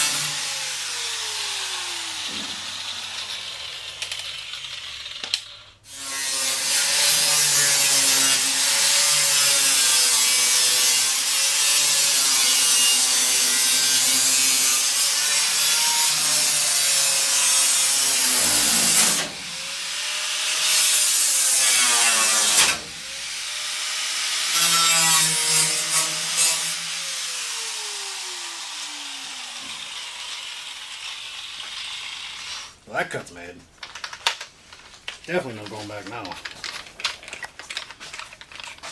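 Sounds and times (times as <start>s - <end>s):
angle grinder cutting sheet steel: 0.0s - 32.8s.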